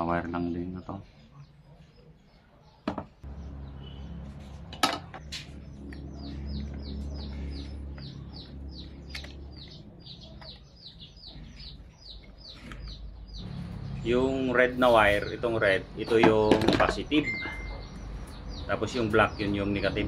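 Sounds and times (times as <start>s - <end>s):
bird chirping: 0.0s - 20.0s
steady low hum: 3.2s - 12.4s.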